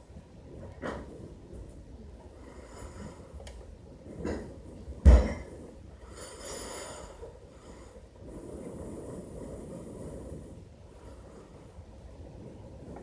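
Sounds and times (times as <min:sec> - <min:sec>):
loud sharp thump: 0:05.1 - 0:05.4
soft knock: 0:05.1 - 0:05.5.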